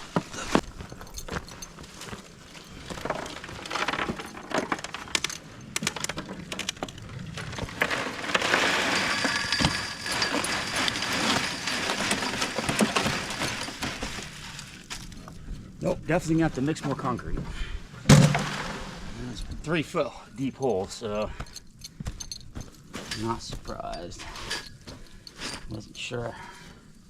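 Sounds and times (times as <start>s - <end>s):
concrete mix scraping and pouring: 7.2s - 15.1s, 18.1s - 19.7s.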